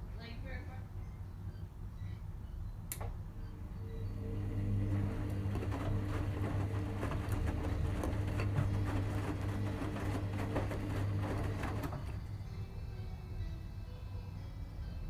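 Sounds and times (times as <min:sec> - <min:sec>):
low hum: 0:03.2 - 0:13.6.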